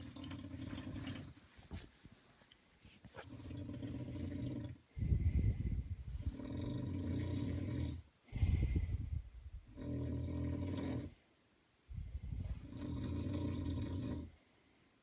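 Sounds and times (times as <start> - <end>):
man snoring heavily: 3.6 - 9.0, 9.7 - 11.1, 12.2 - 14.3.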